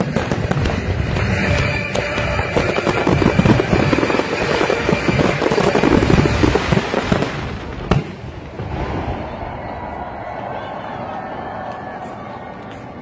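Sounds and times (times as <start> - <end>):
fireworks crackling and banging: 0.0 - 9.8.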